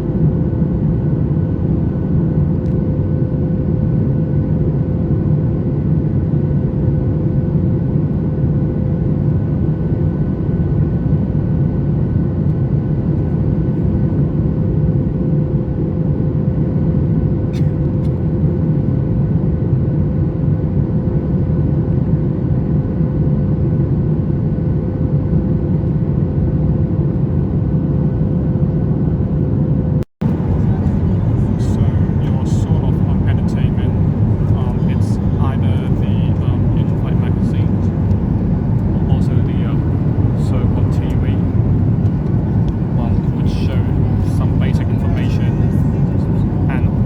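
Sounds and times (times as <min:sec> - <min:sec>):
airplane cabin engine rumble: 0:00.0 - 0:47.0
constant hum: 0:16.8 - 0:19.8, 0:24.0 - 0:47.0.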